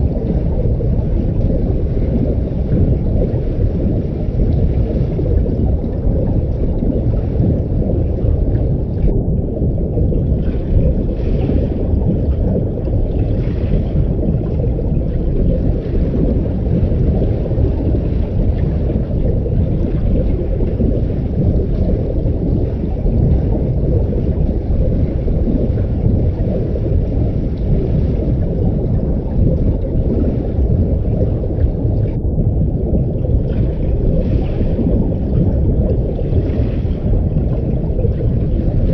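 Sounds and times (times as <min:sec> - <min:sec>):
muffled underwater rumble: 0:00.0 - 0:38.9.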